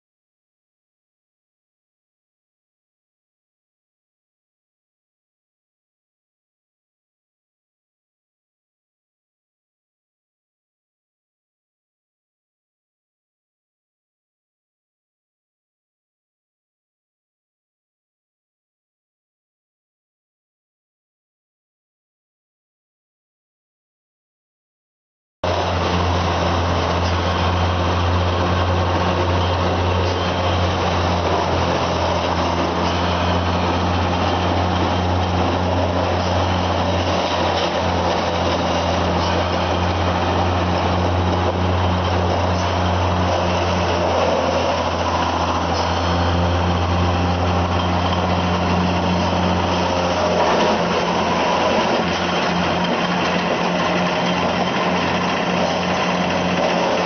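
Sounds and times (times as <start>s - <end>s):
wood chipper running: 25.4s - 57.0s.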